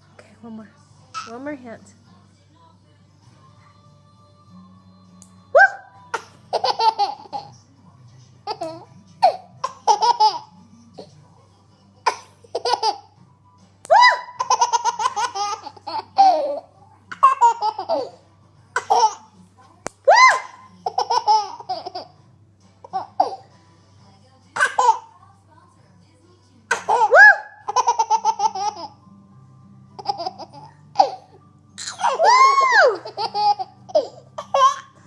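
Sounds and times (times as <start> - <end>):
baby laughing: 6.1 - 7.5, 8.5 - 10.5, 12.1 - 13.1, 14.0 - 18.2, 18.8 - 19.3, 20.2 - 22.2, 22.8 - 23.4, 24.6 - 25.1, 26.7 - 29.0, 30.0 - 35.0.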